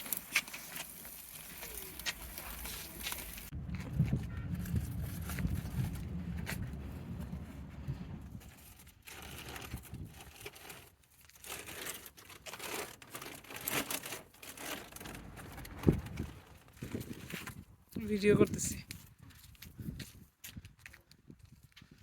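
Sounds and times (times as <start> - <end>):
plastic bag rustling: 0.0 - 3.6, 8.4 - 17.8
low rumble: 2.2 - 9.0, 14.5 - 18.0.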